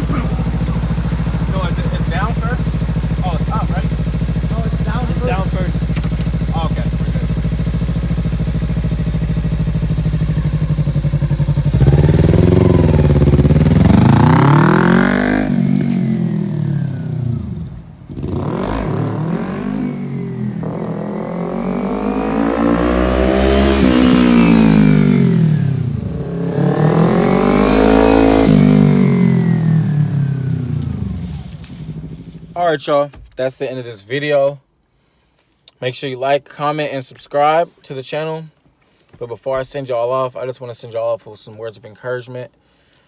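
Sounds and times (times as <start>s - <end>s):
motorcycle engine revving: 0.0s - 32.6s.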